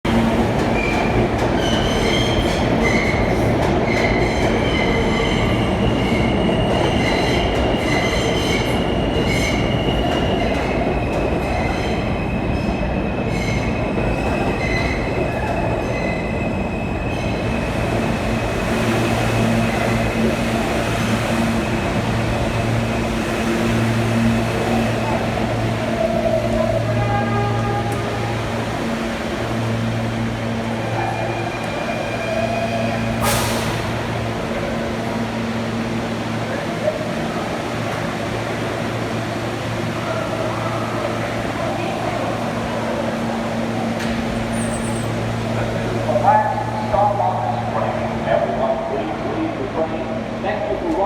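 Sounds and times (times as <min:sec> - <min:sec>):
train running noise: 0:00.0 - 0:51.0
train wheels squealing: 0:44.4 - 0:45.2.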